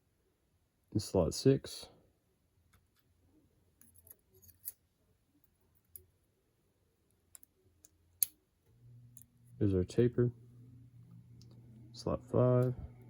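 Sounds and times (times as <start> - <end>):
small clicks of lock parts: 7.3 - 8.4.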